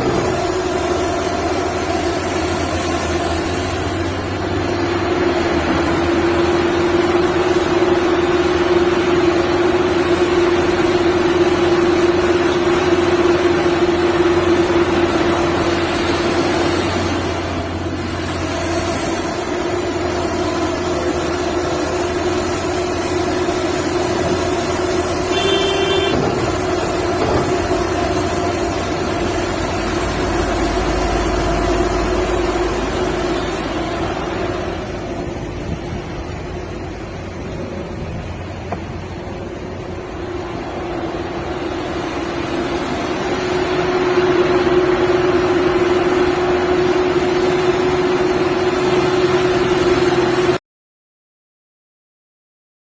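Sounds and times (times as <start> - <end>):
excavator diesel engine rumbling: 0.0 - 50.6
horn blast: 25.1 - 26.9.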